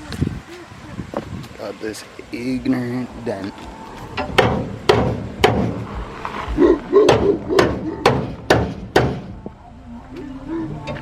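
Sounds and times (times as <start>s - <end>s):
knocks on sheet metal: 4.3s - 5.8s, 7.0s - 9.3s.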